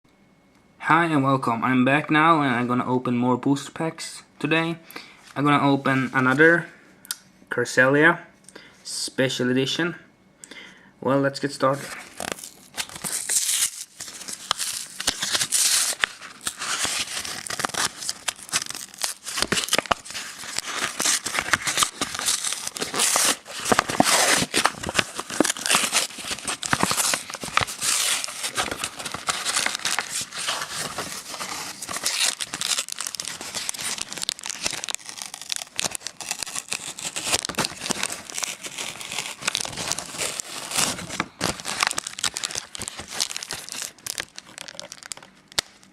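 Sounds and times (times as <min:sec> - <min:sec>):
plastic packaging crinkling and ripping: 0:11.7 - 0:45.9.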